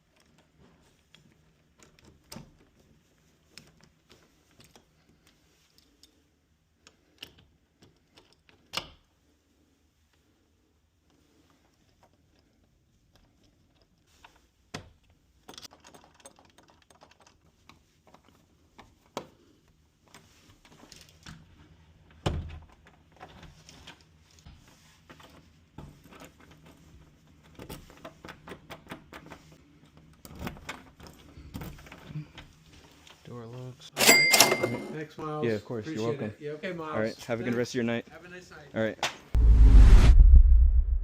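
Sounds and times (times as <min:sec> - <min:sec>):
doorknob hardware clicking and rattling: 0:15.4 - 0:17.5.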